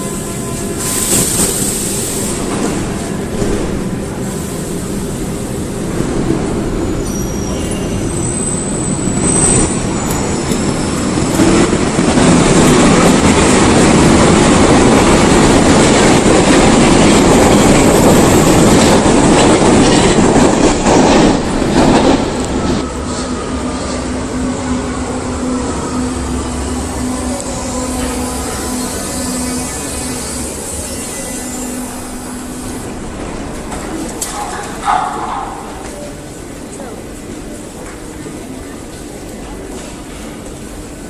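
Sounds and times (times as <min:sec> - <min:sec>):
train humming: 0:00.0 - 0:41.0
train wheel squeal: 0:07.0 - 0:11.5, 0:27.3 - 0:32.0
train clacking over rail joints: 0:10.0 - 0:24.1.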